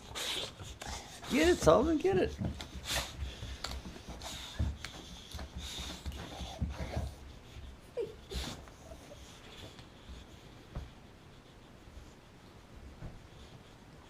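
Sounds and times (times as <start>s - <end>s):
dog sniffing: 0.0s - 14.0s
light knocks and rustles: 1.3s - 7.8s
dog whining: 7.9s - 9.4s.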